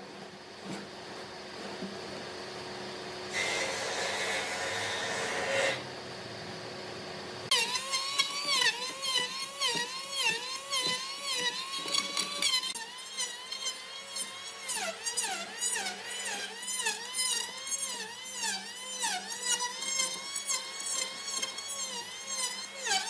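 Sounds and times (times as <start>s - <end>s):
power tool motor whining: 7.5s - 23.0s.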